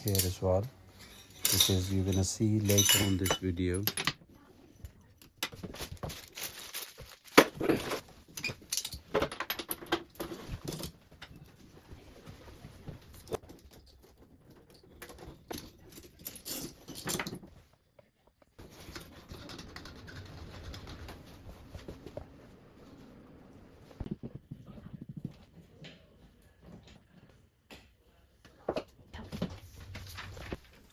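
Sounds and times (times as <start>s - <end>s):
tools and fittings rattling: 0.0s - 4.2s, 13.1s - 17.5s.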